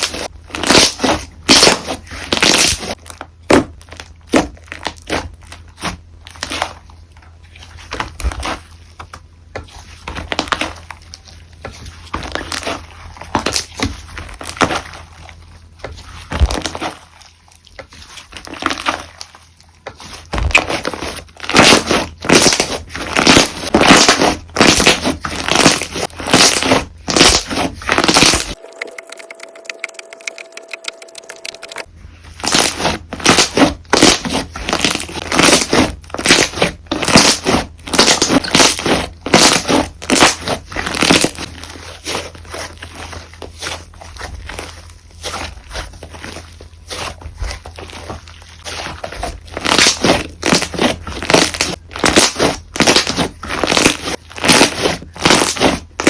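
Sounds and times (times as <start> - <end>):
slime squishing by hand: 0.0 - 56.0.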